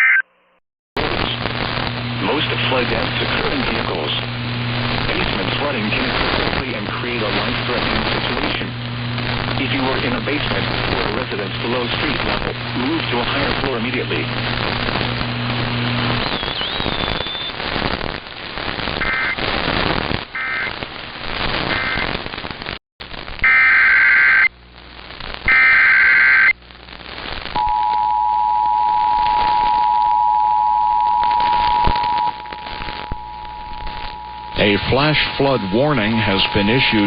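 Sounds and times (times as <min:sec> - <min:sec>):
radio static: 0:00.0 - 0:00.2, 0:01.0 - 0:28.0, 0:28.9 - 0:37.0
two-tone attention signal: 0:27.6 - 0:37.0
warbling data bursts: 0:30.8 - 0:37.0.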